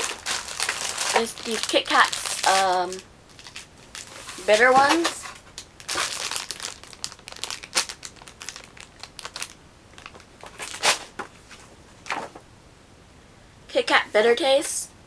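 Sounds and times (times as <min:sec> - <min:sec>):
plastic wrapper crinkling: 0:00.0 - 0:11.3.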